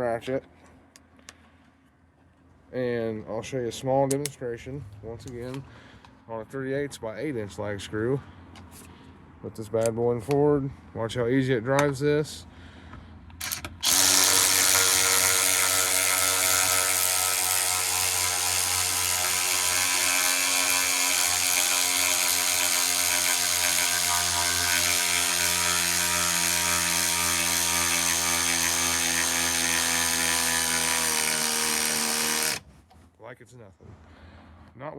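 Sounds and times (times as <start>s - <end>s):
cordless ratchet running: 13.4s - 32.6s.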